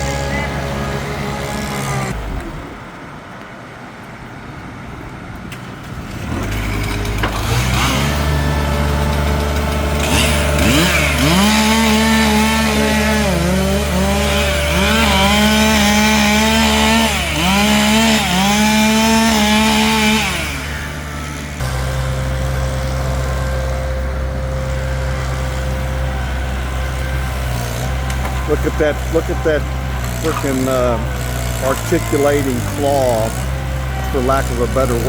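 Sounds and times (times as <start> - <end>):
chainsaw cutting wood: 0.0 - 2.8, 5.8 - 35.0
steady engine drone: 0.0 - 35.0.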